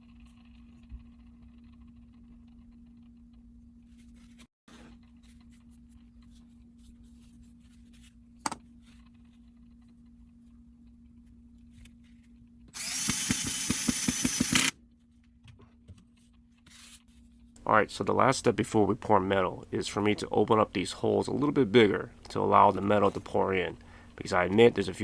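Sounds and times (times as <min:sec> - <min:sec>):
power drill boring into sand: 0:12.8 - 0:14.7
steady low hum: 0:17.6 - 0:25.0.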